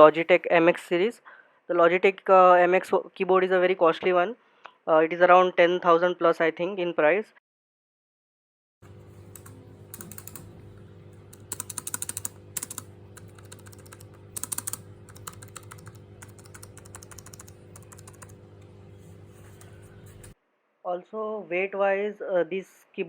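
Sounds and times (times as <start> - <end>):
low hum: 8.8 - 20.4
keyboard key clicks: 9.4 - 10.5, 11.4 - 18.4.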